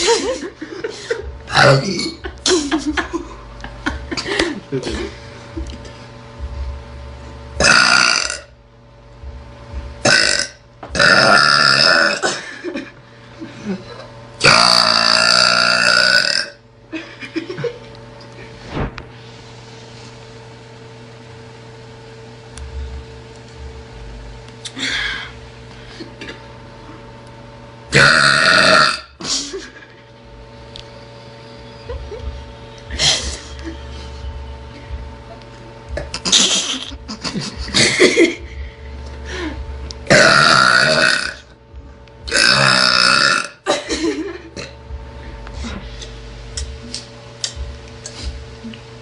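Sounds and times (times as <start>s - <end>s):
girl belching: 7.6s - 8.5s, 10.1s - 12.4s, 14.4s - 16.6s, 27.9s - 29.2s, 40.1s - 41.5s, 42.3s - 43.7s.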